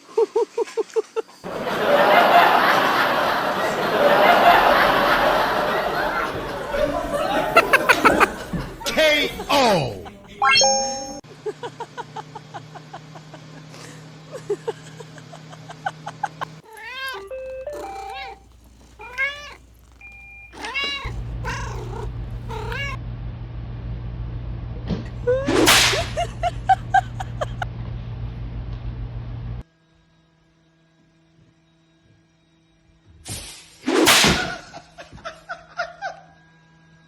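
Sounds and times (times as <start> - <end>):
cat meowing: 4.4 - 10.1, 16.6 - 23.0.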